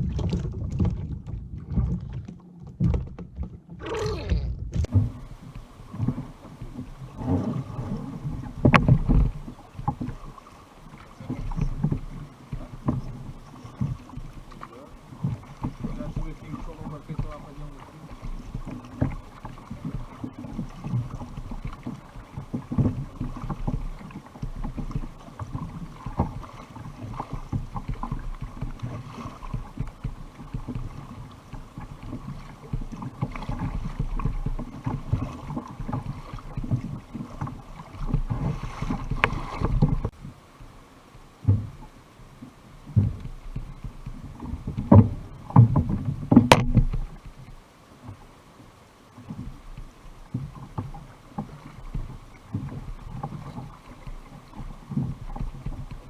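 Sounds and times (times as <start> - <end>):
water sloshing around kayak: 0.0 - 56.0
sharp knocks: 46.3 - 47.0.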